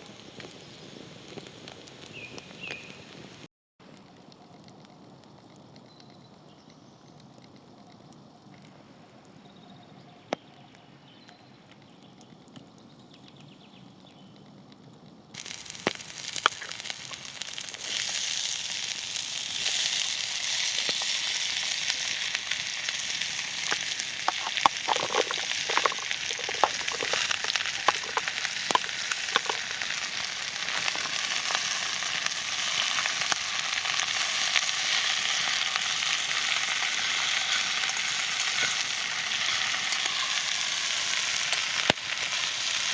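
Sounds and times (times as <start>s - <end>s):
fat popping and crackling: 0.0s - 3.2s, 14.9s - 42.9s
steak sizzling: 15.4s - 42.9s.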